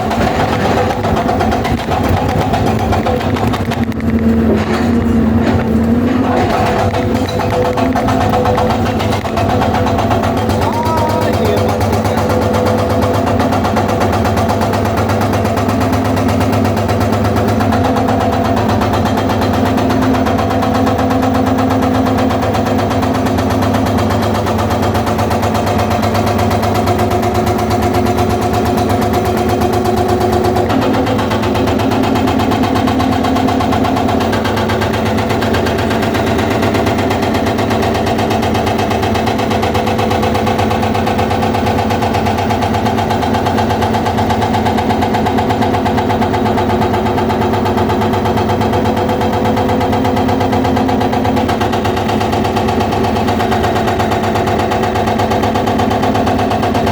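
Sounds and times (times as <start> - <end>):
excavator diesel engine running: 0.0 - 56.9
hydraulic breaker hammering stone: 0.0 - 56.9.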